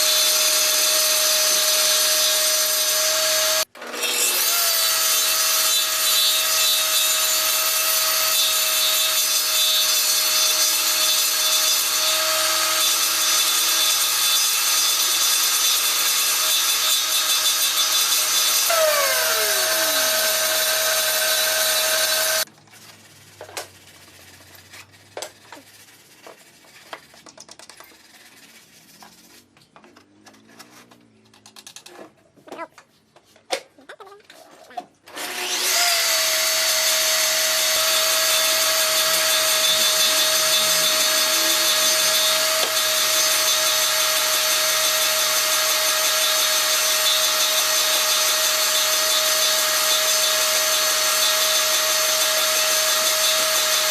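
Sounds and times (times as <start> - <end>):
power tool running on wood: 0.0 - 22.5, 35.1 - 53.9.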